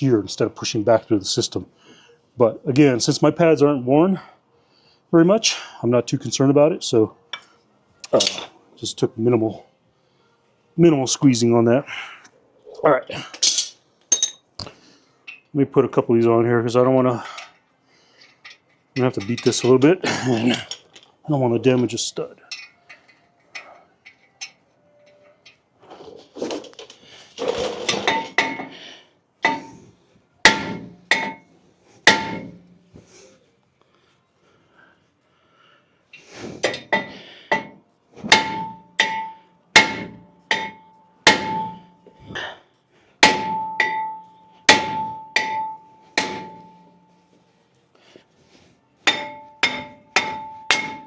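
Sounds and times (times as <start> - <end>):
hammer striking metal rotor: 30.5 - 31.4, 32.1 - 32.7, 36.7 - 42.0, 43.2 - 47.0, 49.1 - 51.0.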